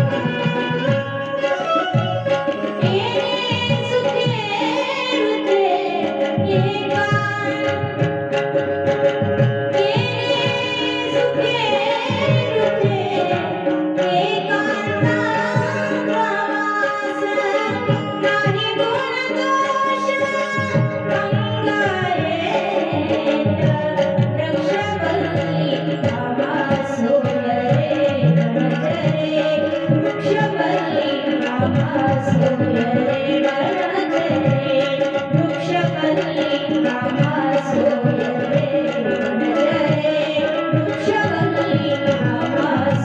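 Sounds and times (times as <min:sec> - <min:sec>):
tabla drumming: 0:00.0 - 0:43.0
person singing devotional song: 0:09.8 - 0:43.0.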